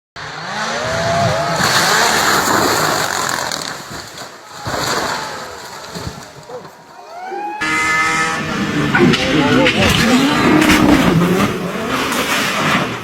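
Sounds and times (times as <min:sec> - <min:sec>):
engine rising and falling: 0:00.2 - 0:03.9, 0:07.6 - 0:13.0
car crashing: 0:00.9 - 0:07.0, 0:07.6 - 0:13.0.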